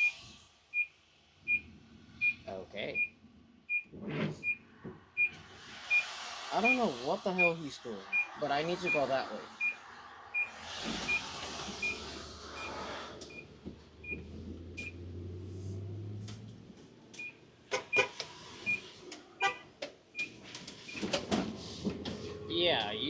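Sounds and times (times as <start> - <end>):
vehicle warning beeper: 0.0 - 0.9, 1.5 - 4.6, 5.2 - 15.0, 17.2 - 21.1
vehicle noise with low hum: 0.0 - 23.0
car horn toots: 17.7 - 18.2, 19.4 - 19.7.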